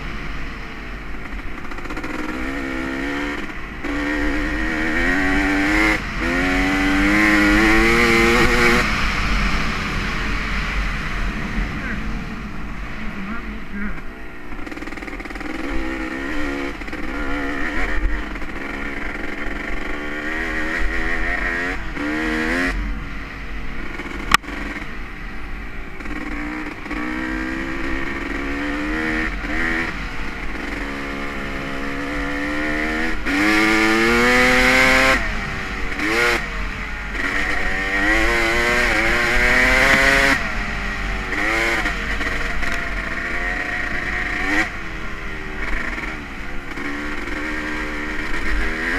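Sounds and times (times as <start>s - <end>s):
two-stroke motorcycle engine revving: 0.0s - 48.9s.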